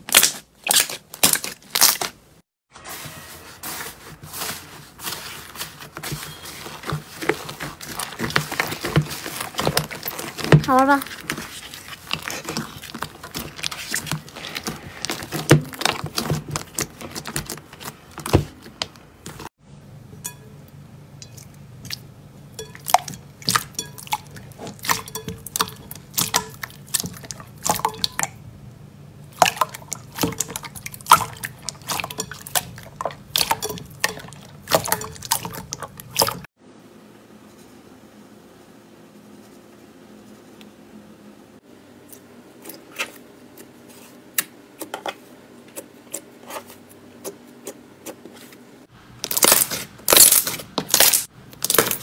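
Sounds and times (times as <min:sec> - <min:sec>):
slime squelching: 0:00.0 - 0:02.3, 0:03.6 - 0:19.5, 0:21.2 - 0:28.5, 0:29.2 - 0:36.5, 0:49.2 - 0:52.0.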